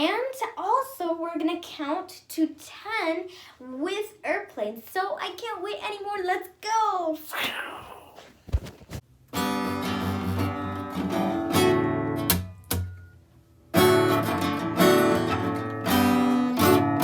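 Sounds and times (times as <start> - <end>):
acoustic guitar strumming chords: 9.3 - 17.0.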